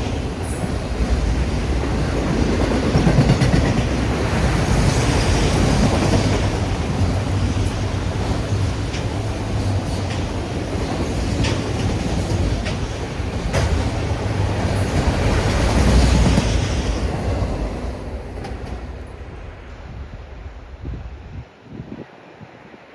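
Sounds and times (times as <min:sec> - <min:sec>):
train wheels rumbling on rail: 0:00.0 - 0:21.5
clicks over rail joints: 0:11.2 - 0:13.9.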